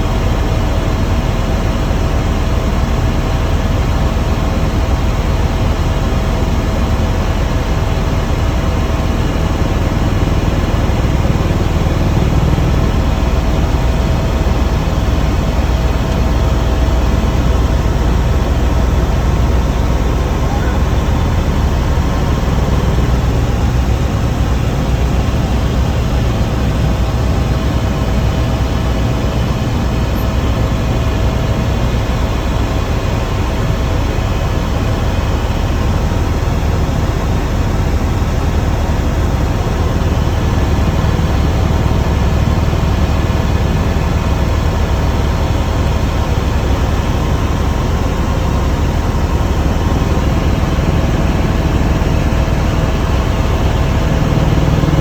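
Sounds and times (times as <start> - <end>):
helicopter engine and rotor: 0.0 - 55.0.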